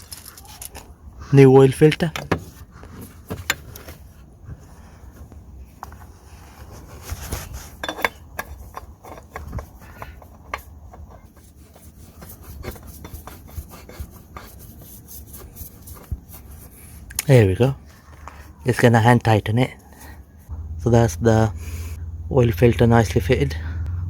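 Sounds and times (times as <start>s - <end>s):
oil filter rubbing and scraping: 0.0s - 20.6s.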